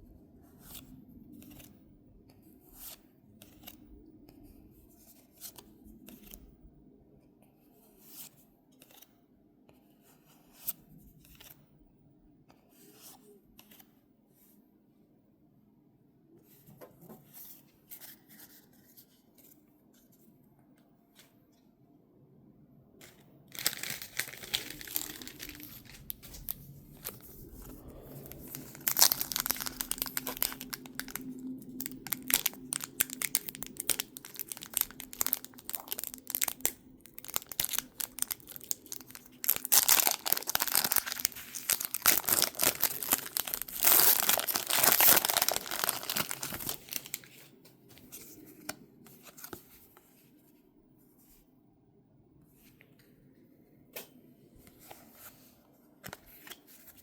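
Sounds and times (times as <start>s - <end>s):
packaging being torn and crumpled: 23.5s - 27.2s, 28.2s - 47.3s.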